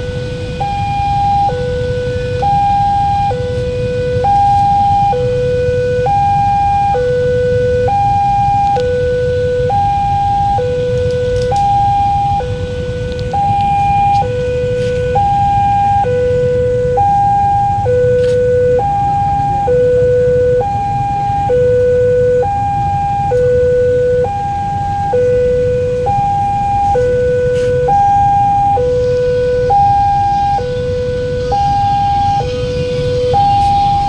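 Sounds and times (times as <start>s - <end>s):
low rumble: 0.0s - 34.0s
two-tone crossing warning siren: 0.0s - 34.0s.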